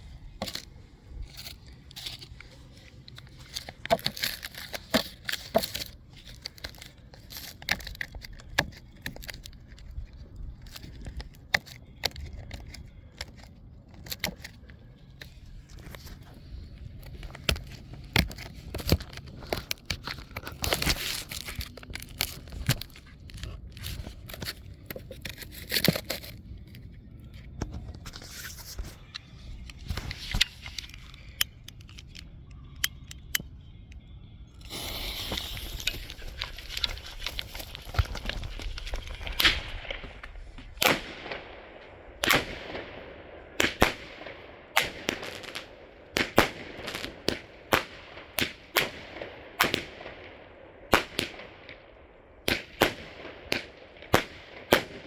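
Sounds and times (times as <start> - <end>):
fireworks crackling: 34.6 - 41.4, 43.6 - 47.9
fireworks shots: 39.1 - 51.8, 52.4 - 55.0.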